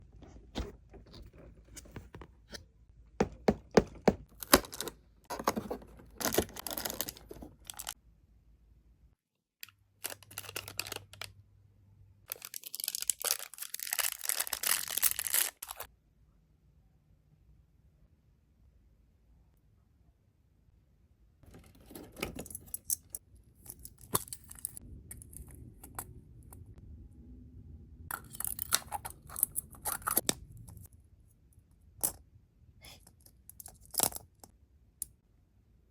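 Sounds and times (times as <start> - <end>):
packaging crinkling and rustling: 4.4 - 8.0, 12.3 - 15.9.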